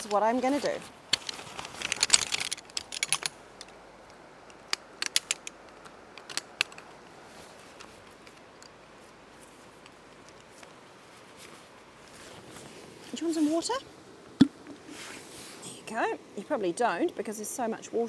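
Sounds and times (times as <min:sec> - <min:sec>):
metallic clicks of camp gear: 0:00.6 - 0:08.8.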